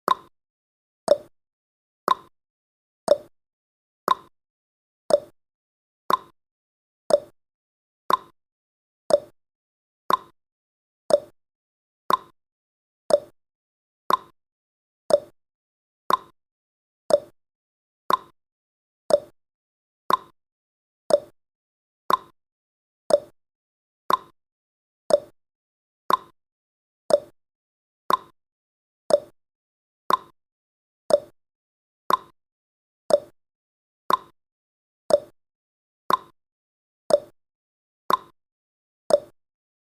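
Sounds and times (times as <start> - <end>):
clock ticking: 0.1 - 0.3, 1.1 - 1.3, 2.1 - 2.3, 3.1 - 3.3, 4.1 - 4.3, 5.1 - 5.3, 6.1 - 6.3, 7.1 - 7.3, 8.1 - 8.3, 9.1 - 9.3, 10.1 - 10.3, 11.1 - 11.3, 12.1 - 12.3, 13.1 - 13.3, 14.1 - 14.3, 15.1 - 15.3, 16.1 - 16.3, 17.1 - 17.3, 18.1 - 18.3, 19.1 - 19.3, 20.1 - 20.3, 21.1 - 21.3, 22.1 - 22.3, 23.1 - 23.3, 24.1 - 24.3, 25.1 - 25.3, 26.1 - 26.3, 27.1 - 27.3, 28.1 - 28.3, 29.1 - 29.3, 30.1 - 30.3, 31.1 - 31.4, 32.1 - 32.3, 33.1 - 33.4, 34.1 - 34.3, 35.1 - 35.4, 36.1 - 36.4, 37.1 - 37.4, 38.1 - 38.4, 39.1 - 39.4.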